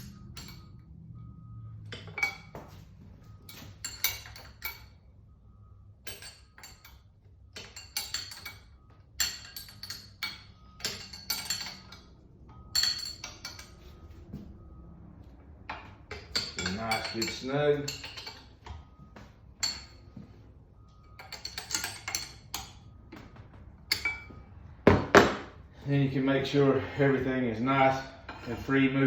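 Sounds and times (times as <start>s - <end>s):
wrench clinking on metal: 0.0s - 1.0s, 1.8s - 5.0s, 6.0s - 14.0s, 15.7s - 19.0s, 19.6s - 20.0s, 21.0s - 22.9s, 23.8s - 25.6s.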